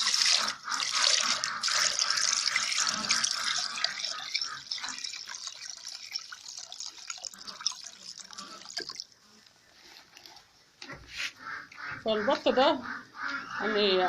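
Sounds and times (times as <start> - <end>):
water splashing and trickling: 0.0 - 10.6.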